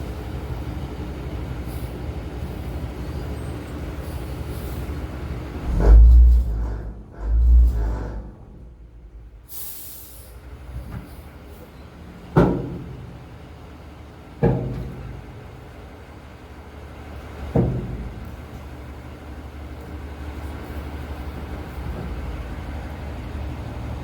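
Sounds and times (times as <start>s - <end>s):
skid steer engine running: 5.2s - 9.8s.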